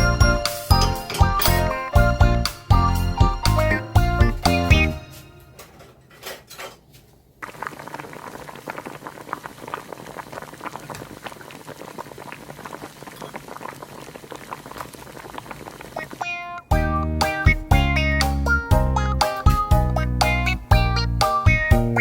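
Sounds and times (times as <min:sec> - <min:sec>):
liquid boiling in a pot: 0:07.2 - 0:16.7.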